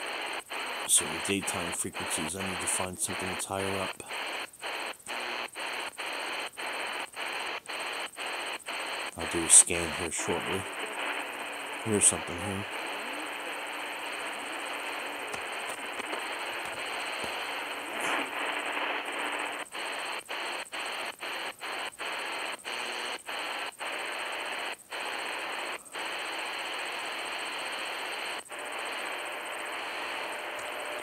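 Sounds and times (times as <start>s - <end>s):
radio static hiss: 0.0s - 31.0s.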